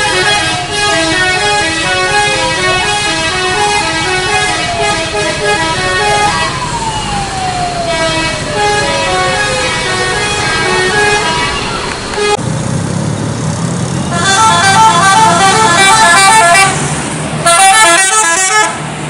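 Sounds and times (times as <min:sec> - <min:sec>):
multi-tone horn playing a tune: 0:00.0 - 0:06.6, 0:07.9 - 0:12.4, 0:14.1 - 0:16.8, 0:17.4 - 0:18.8.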